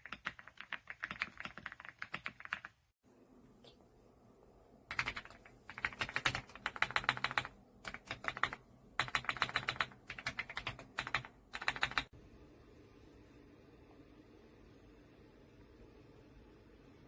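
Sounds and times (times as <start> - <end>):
mechanical keyboard typing: 0.0 - 2.8, 4.9 - 12.1.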